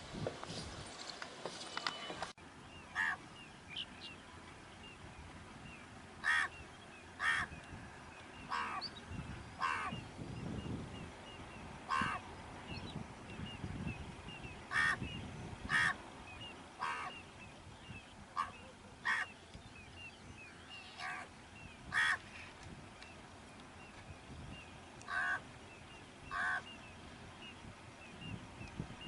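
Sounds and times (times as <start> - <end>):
harsh bird squawks: 2.9 - 3.2, 6.2 - 6.5, 7.2 - 7.5, 9.6 - 10.0, 11.9 - 12.2, 14.7 - 15.0, 15.7 - 16.0, 16.8 - 17.2, 18.4 - 19.3, 20.8 - 21.3, 21.9 - 22.2, 25.1 - 25.4, 26.3 - 26.7.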